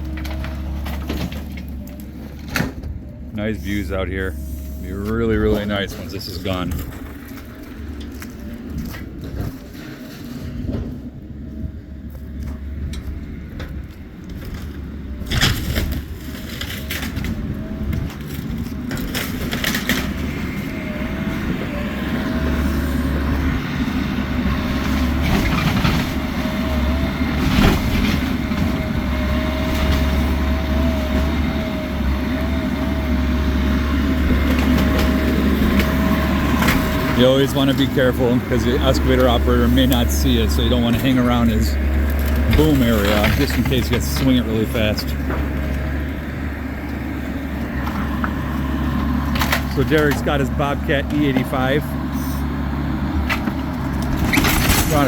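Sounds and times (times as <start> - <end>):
excavator engine whining: 0.0 - 55.0
walls cracking and crunching: 12.3 - 51.8, 53.2 - 55.0.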